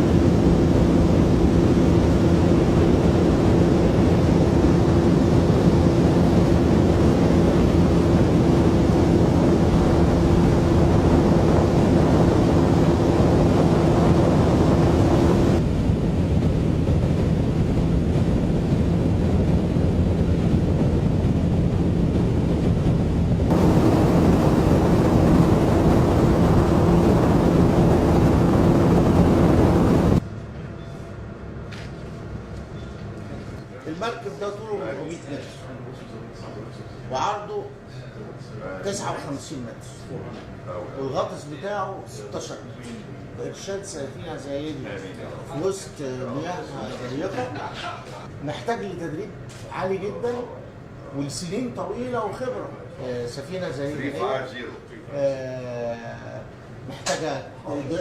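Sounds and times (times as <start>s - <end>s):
wind noise on microphone: 0.0s - 30.2s
ship engines droning: 0.0s - 30.5s.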